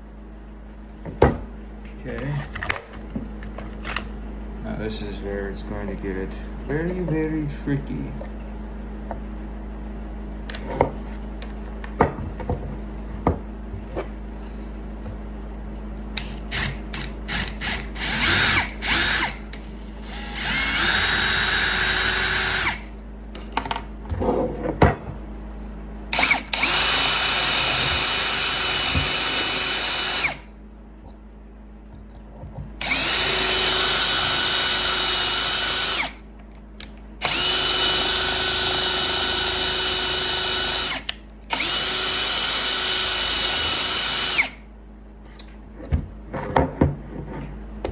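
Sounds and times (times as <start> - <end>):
electric drill whining: 16.2 - 22.9, 26.1 - 30.5, 32.8 - 36.2, 37.2 - 44.6.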